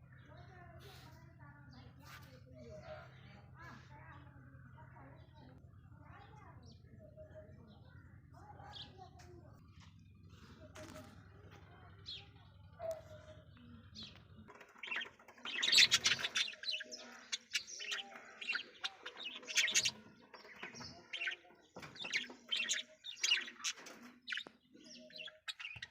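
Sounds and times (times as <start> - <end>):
parrot chirping: 14.6 - 25.9.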